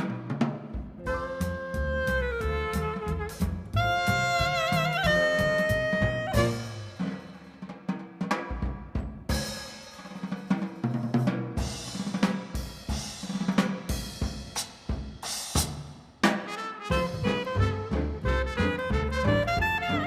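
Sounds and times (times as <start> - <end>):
jazz drum kit playing: 0.0 - 20.0.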